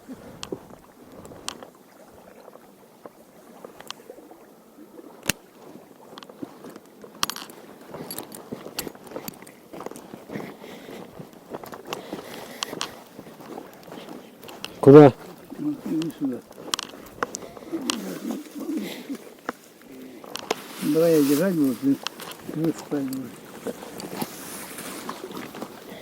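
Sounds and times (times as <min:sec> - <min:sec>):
light rustling: 0:05.0 - 0:26.0.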